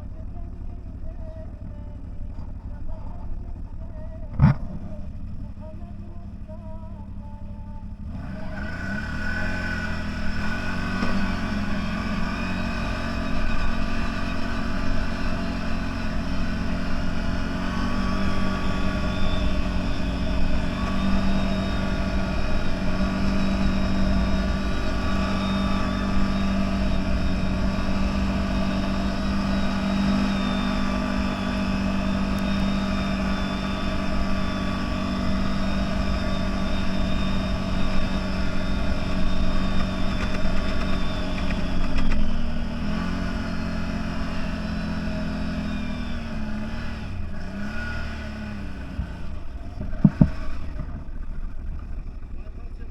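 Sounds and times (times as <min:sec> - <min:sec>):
off-road vehicle engine running: 0:00.0 - 0:52.9.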